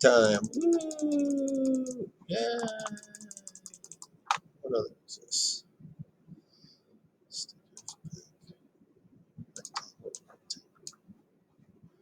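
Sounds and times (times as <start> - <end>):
mouse and keyboard clicks: 0.2 - 2.0, 2.6 - 4.4, 7.8 - 8.0, 9.6 - 11.0.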